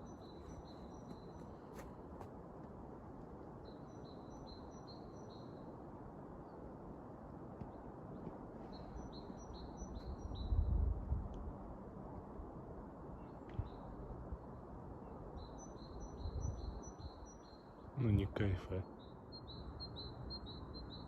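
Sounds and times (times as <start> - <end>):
small songbird singing: 15.4 - 21.0
distant road traffic rumble: 17.4 - 21.0.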